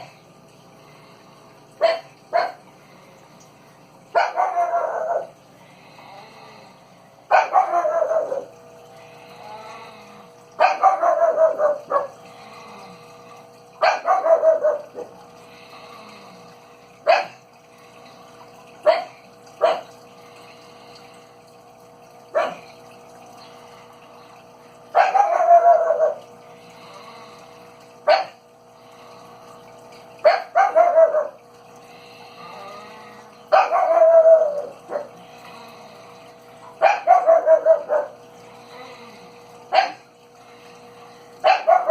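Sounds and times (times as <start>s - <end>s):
dog barking and yelping: 4.1s - 5.3s, 7.3s - 8.5s, 10.6s - 12.2s, 13.8s - 15.1s, 22.3s - 22.6s, 25.0s - 26.2s, 30.2s - 31.4s, 33.5s - 35.2s, 36.8s - 38.2s, 41.4s - 41.9s.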